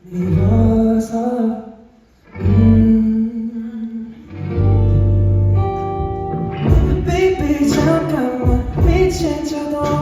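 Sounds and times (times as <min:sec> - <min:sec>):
man singing pop ballad: 0:00.0 - 0:04.3, 0:06.7 - 0:10.0
guitar accompaniment: 0:00.0 - 0:10.0.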